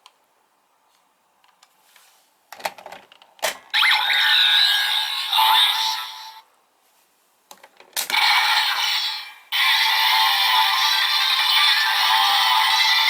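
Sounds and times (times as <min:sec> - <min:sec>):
toy electronic sound effect: 0:03.8 - 0:06.4, 0:08.1 - 0:13.0.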